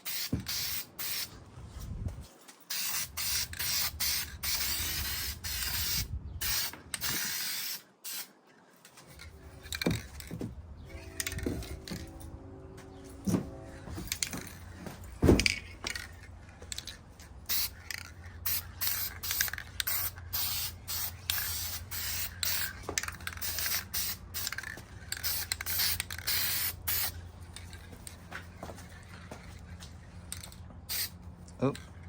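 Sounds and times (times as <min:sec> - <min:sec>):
spray paint can hissing: 0:00.0 - 0:01.4, 0:02.7 - 0:08.4, 0:17.4 - 0:27.2, 0:30.9 - 0:31.2
steady low hum: 0:08.6 - 0:32.0.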